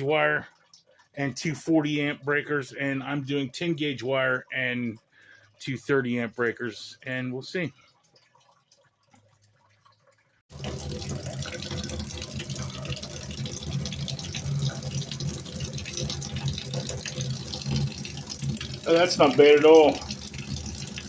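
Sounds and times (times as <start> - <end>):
water tap running: 10.5 - 21.0.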